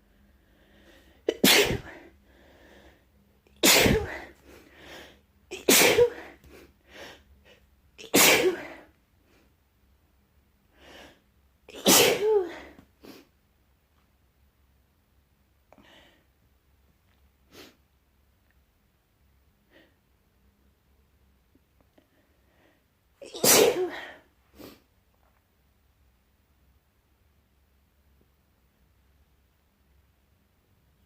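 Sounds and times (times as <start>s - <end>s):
person sneezing: 1.3s - 2.1s, 3.6s - 4.4s, 5.5s - 6.6s, 8.0s - 8.9s, 11.7s - 12.9s, 23.2s - 24.8s.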